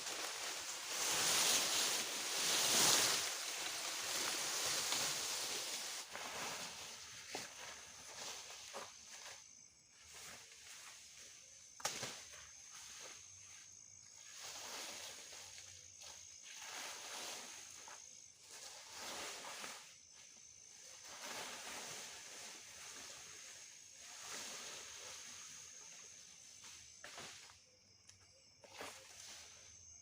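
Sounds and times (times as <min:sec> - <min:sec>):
rustling: 0:00.0 - 0:09.3
high-pitched insect drone: 0:00.0 - 0:30.0.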